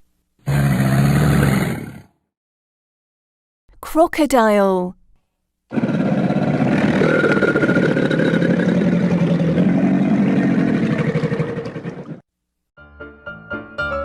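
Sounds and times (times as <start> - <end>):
crocodile growling: 0.4 - 2.2, 5.7 - 12.2.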